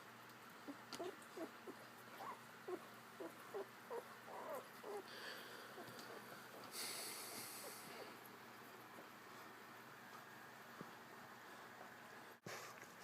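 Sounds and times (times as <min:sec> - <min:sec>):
puppy squeaking: 0:01.0 - 0:05.1.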